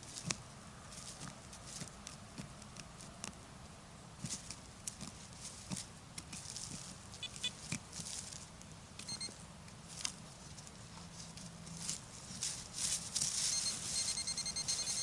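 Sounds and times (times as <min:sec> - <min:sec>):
rustling in leaf litter: 0:00.0 - 0:02.0, 0:04.2 - 0:08.8, 0:09.8 - 0:15.0
metal detector beeps: 0:07.2 - 0:07.6, 0:09.0 - 0:09.4, 0:13.4 - 0:15.0.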